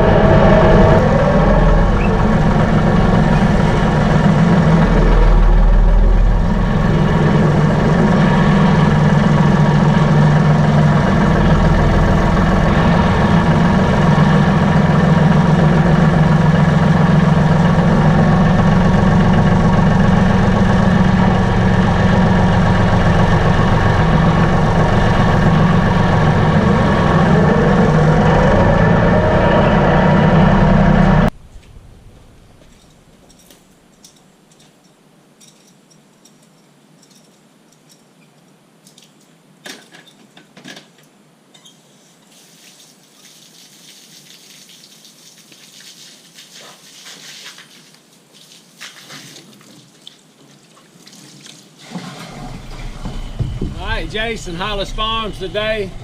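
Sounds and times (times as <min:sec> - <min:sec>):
vehicle engine humming: 0:00.0 - 0:33.9, 0:51.8 - 0:56.0.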